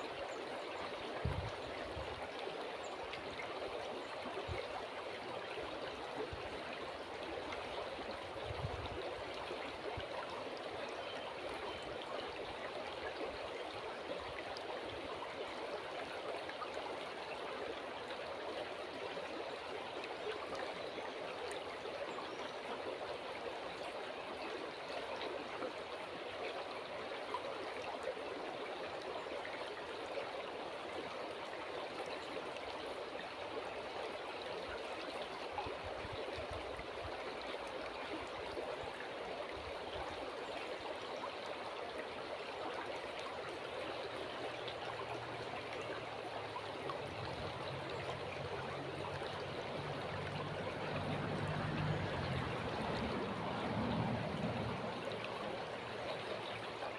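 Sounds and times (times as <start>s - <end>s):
river water flowing: 0.0s - 56.9s.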